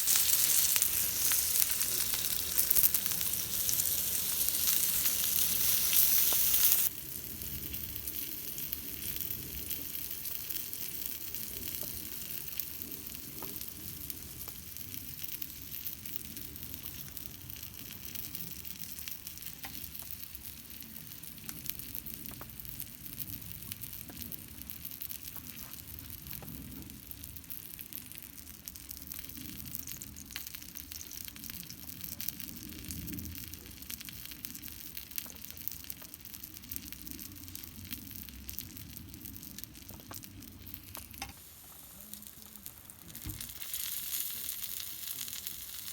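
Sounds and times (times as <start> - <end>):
loud hiss: 0.0 - 6.9
steady rain hiss: 0.0 - 18.5, 35.8 - 45.9
campfire crackling: 0.0 - 45.9.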